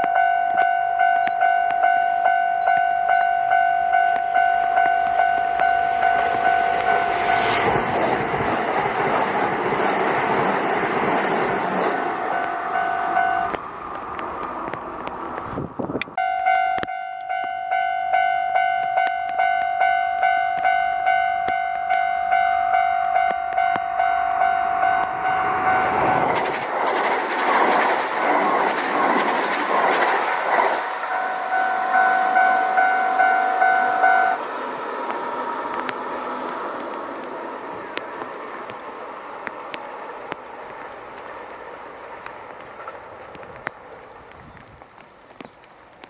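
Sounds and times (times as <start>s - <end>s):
level crossing warning bell: 0.0s - 7.7s, 11.1s - 13.6s, 16.2s - 26.3s, 31.0s - 34.4s
train passing: 0.0s - 46.0s.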